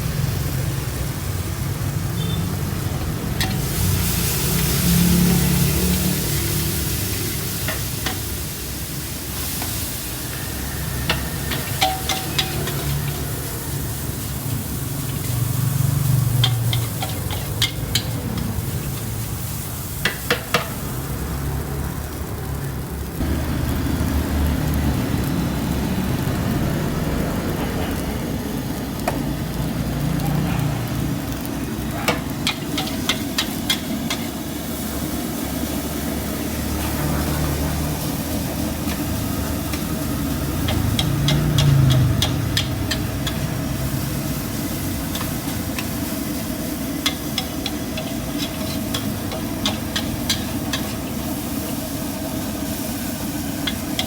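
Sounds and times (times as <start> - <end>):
food sizzling in wok: 0.0 - 54.0
metal spatula clanging on wok: 11.0 - 13.3, 16.4 - 18.5, 32.1 - 34.3, 40.5 - 43.5.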